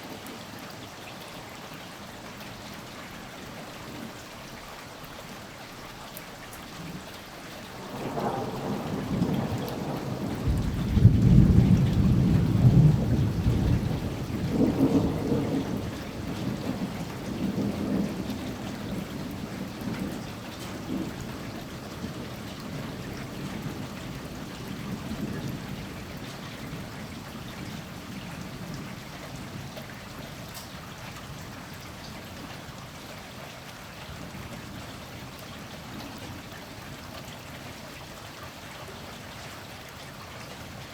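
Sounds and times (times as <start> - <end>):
steady rain: 0.0 - 40.9
thunder rumble: 7.7 - 29.7.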